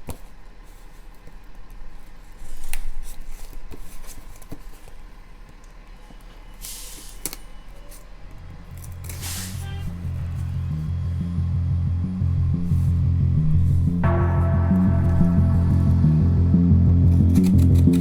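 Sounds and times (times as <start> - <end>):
packaging clicks and snips: 6.6 - 8.1, 17.2 - 18.0.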